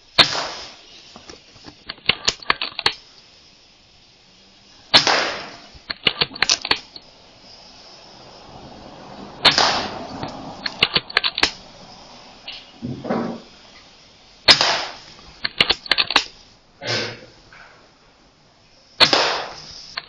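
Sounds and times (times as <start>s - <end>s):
air rifle shot crack: 0.2s - 0.8s, 4.9s - 6.9s, 9.4s - 10.0s, 14.5s - 15.1s, 19.0s - 19.7s.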